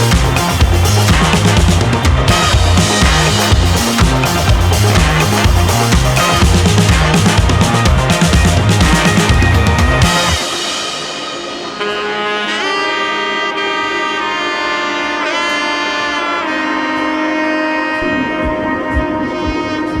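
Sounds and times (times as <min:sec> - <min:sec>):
low drum beats: 0:00.0 - 0:11.9, 0:18.0 - 0:20.0
melody of sliding held notes: 0:00.0 - 0:20.0.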